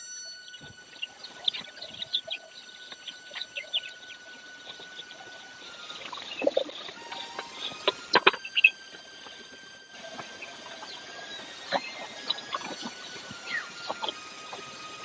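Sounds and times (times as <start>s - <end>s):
small birds chirping: 0.0s - 15.0s
louder lower-pitched sound: 7.0s - 15.0s.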